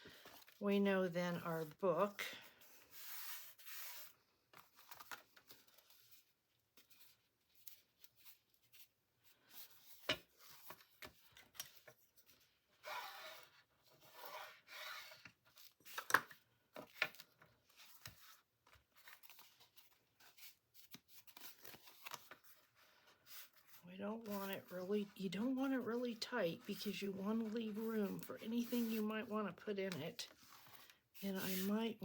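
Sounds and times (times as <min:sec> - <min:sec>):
fabric and paper rustling: 0:15.4 - 0:32.0.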